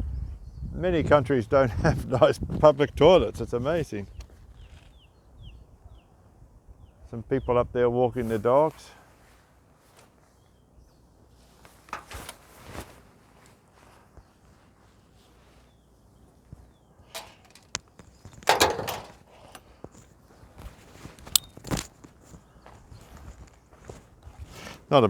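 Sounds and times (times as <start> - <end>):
footsteps on dirt: 20.3 - 24.9.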